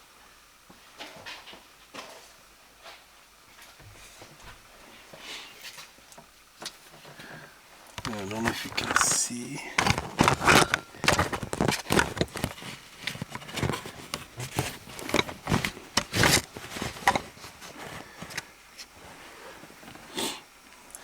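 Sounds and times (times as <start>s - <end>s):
handling clicks taps and scrapes: 7.9s - 19.1s.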